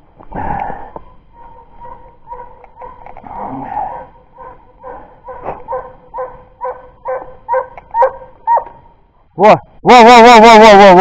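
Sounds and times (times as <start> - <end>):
hound whining and yelping: 1.0 - 3.2, 3.8 - 8.9.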